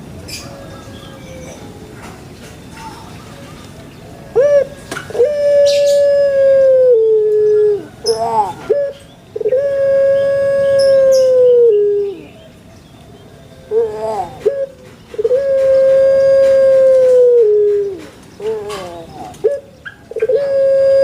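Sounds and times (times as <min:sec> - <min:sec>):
dove cooing: 0:04.1 - 0:12.4, 0:13.6 - 0:21.0.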